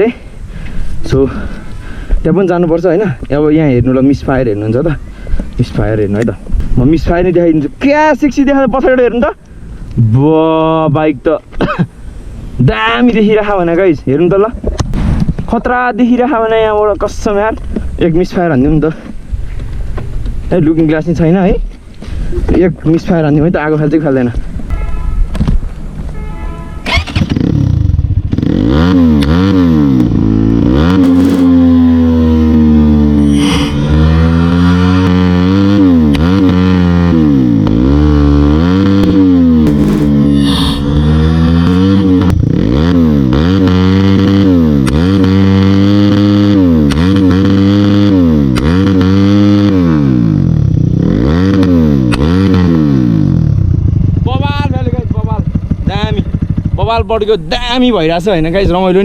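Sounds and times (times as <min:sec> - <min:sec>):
exhaust backfire pops: 0:26.8 - 0:32.6, 0:34.0 - 0:36.7, 0:38.8 - 0:40.4, 0:41.5 - 0:47.6, 0:48.4 - 0:57.0
motorcycle engine revving: 0:26.8 - 0:58.6
exhaust pops: 0:29.2 - 0:32.6, 0:38.8 - 0:40.4.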